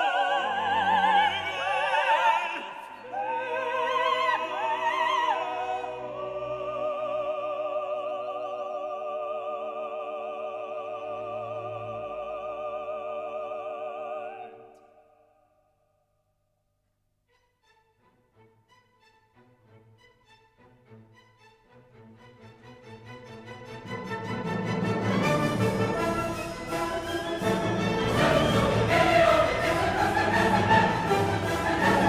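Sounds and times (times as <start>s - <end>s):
orchestra: 0.0s - 14.7s, 17.3s - 32.0s
operatic singing: 0.0s - 15.2s, 22.2s - 32.0s.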